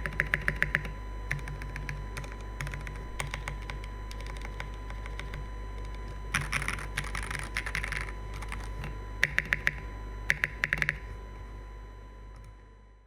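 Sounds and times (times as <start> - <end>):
mechanical keyboard typing: 0.0 - 11.1
faint steady hum: 0.0 - 13.0.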